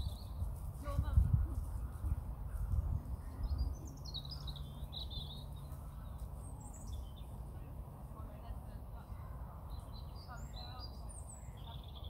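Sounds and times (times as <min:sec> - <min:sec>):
small bird chirping: 0:00.0 - 0:00.5, 0:02.6 - 0:07.4.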